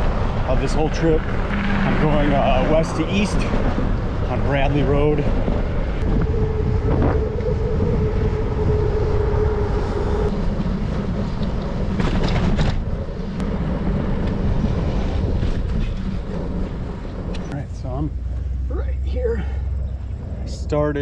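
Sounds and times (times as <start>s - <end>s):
steady hum: 0.0s - 12.2s
road traffic noise: 0.0s - 21.0s
wind rushing over microphone: 0.0s - 21.0s.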